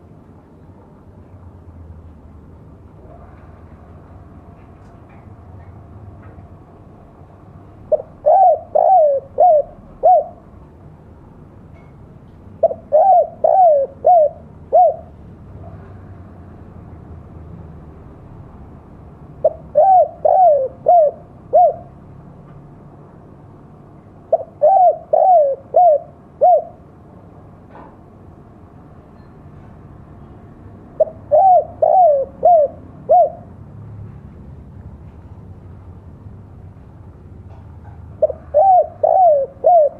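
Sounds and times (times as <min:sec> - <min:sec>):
dove cooing: 0:07.9 - 0:10.6, 0:12.6 - 0:15.2, 0:19.4 - 0:22.0, 0:24.3 - 0:26.8, 0:31.0 - 0:33.6, 0:38.2 - 0:39.9.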